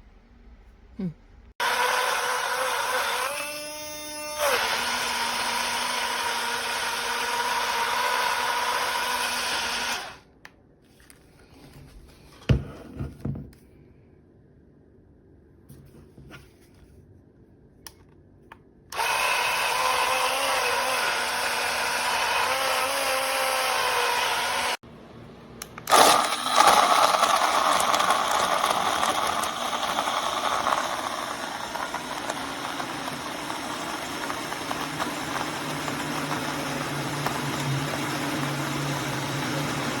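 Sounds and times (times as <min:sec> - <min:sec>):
portable blender motor running: 0:01.6 - 0:10.2, 0:18.9 - 0:24.8, 0:25.8 - 0:40.0.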